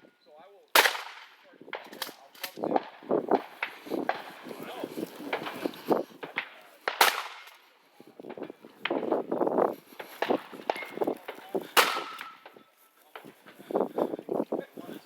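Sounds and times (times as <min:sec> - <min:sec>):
shotgun shots: 0:00.7 - 0:04.3, 0:06.3 - 0:07.6, 0:11.8 - 0:12.5.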